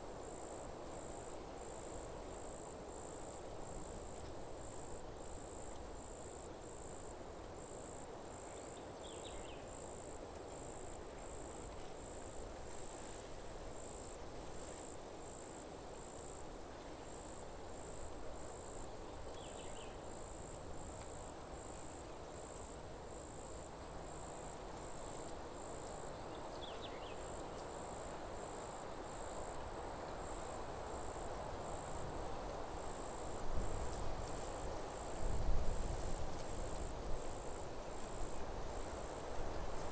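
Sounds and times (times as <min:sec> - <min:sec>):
insect chirping: 0:26.5 - 0:27.4.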